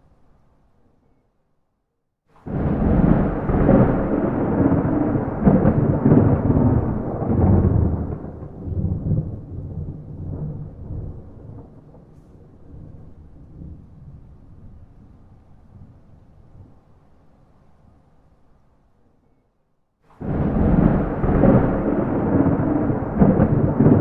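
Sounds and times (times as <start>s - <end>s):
thunder crack and rumble: 2.4s - 17.0s, 20.1s - 24.0s.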